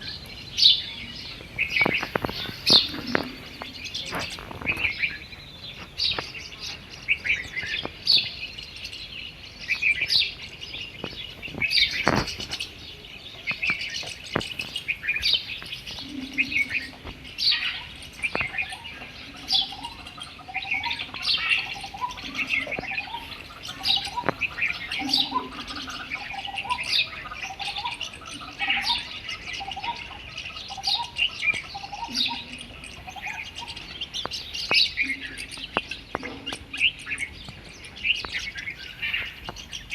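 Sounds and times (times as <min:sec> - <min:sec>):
birds chirping and singing: 0:00.0 - 0:39.9.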